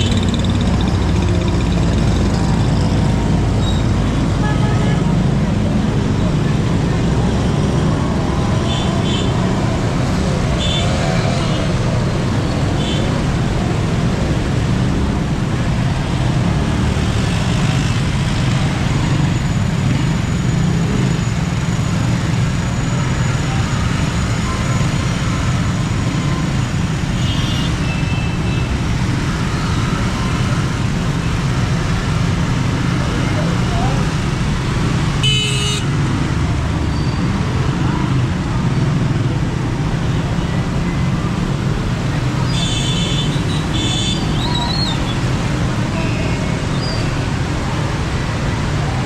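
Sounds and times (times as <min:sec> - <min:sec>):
road traffic rumble: 0:00.0 - 0:49.0.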